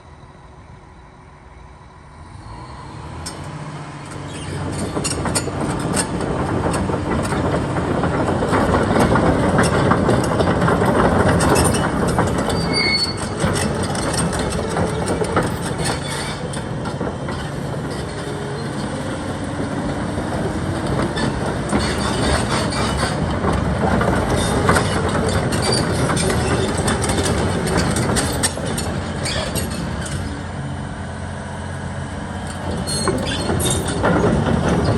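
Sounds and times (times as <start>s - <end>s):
excavator engine and hydraulics: 0.0s - 34.9s
high squeal: 11.6s - 16.6s.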